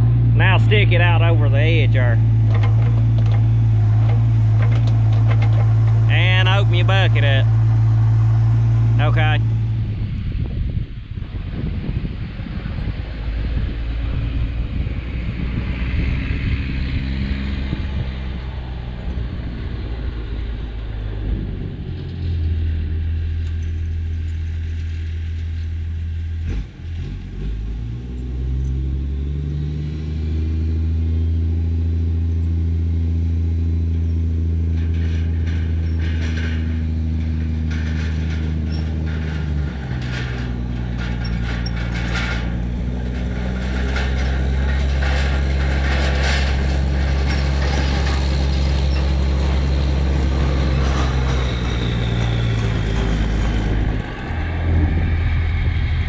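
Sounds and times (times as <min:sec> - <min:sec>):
excavator engine running: 0:00.0 - 0:26.5, 0:30.8 - 0:56.0
metallic clanks and rattles: 0:00.4 - 0:09.5, 0:33.3 - 0:55.7.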